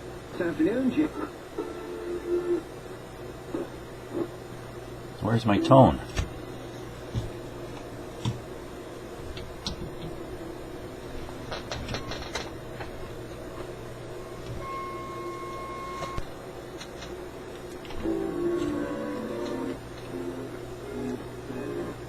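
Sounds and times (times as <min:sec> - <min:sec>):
radio speaker hiss and hum: 0:03.5 - 0:04.4.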